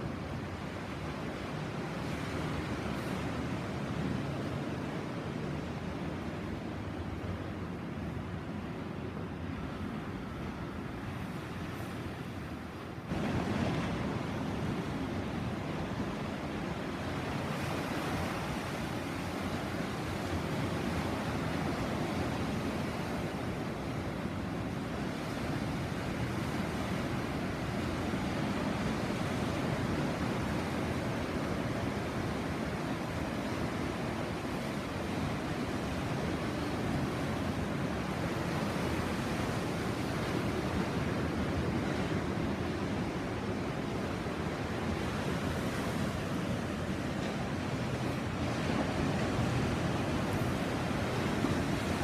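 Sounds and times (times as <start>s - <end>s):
sea surf washing onto shore: 0.0s - 52.0s.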